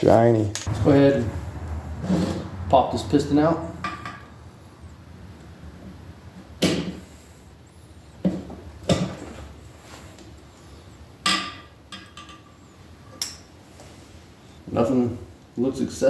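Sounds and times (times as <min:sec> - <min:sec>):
sharp knocks on metal: 0:06.6 - 0:07.0.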